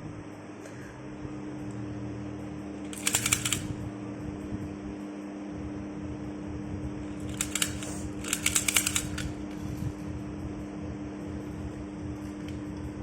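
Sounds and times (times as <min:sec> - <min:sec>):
steady low hum: 0:00.0 - 0:13.0
rapid crackly clicks: 0:02.9 - 0:03.7, 0:07.3 - 0:09.3.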